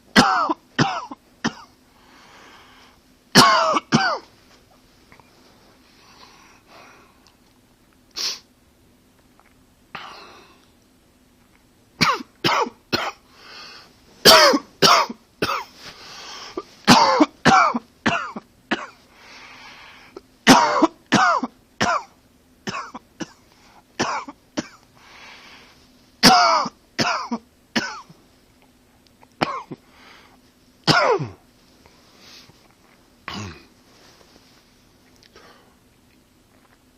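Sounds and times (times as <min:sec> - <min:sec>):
man coughing: 0:00.1 - 0:01.8, 0:03.4 - 0:04.3, 0:12.0 - 0:13.2, 0:14.2 - 0:15.7, 0:16.5 - 0:19.0, 0:20.5 - 0:22.1, 0:22.7 - 0:23.4, 0:24.0 - 0:24.8, 0:26.2 - 0:28.1, 0:29.4 - 0:29.8, 0:30.9 - 0:31.4, 0:33.3 - 0:33.7
soft breaths: 0:01.8 - 0:03.2, 0:04.3 - 0:07.5, 0:13.2 - 0:14.2, 0:15.7 - 0:16.9, 0:19.0 - 0:20.3, 0:24.9 - 0:26.2, 0:29.8 - 0:30.8, 0:31.5 - 0:36.2.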